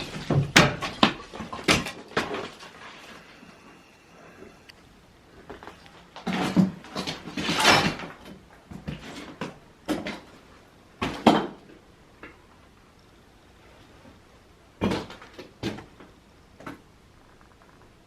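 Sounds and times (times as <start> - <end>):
wooden boards knocking and clattering: 0.0 - 2.7.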